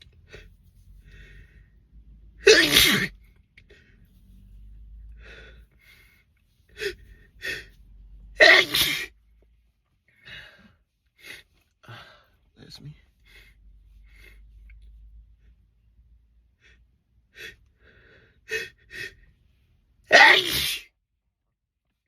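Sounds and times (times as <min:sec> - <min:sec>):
short sharp breaths: 0:00.2 - 0:01.9, 0:03.6 - 0:07.9
man sneezing: 0:02.4 - 0:03.2, 0:08.4 - 0:09.1, 0:20.1 - 0:20.9.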